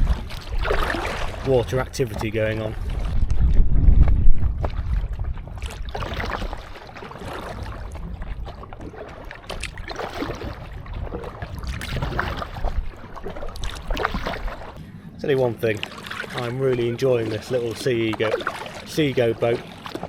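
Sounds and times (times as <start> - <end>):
wind rumble on microphone: 0.0 - 15.7
kayak paddle strokes: 0.0 - 20.0
water splashing against kayak: 0.0 - 20.0.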